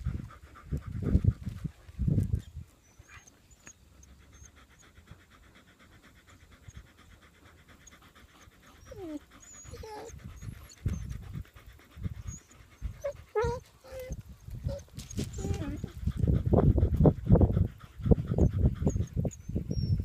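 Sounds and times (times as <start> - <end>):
dog panting: 0.0 - 20.0
dog whining: 8.7 - 11.2, 12.2 - 16.0.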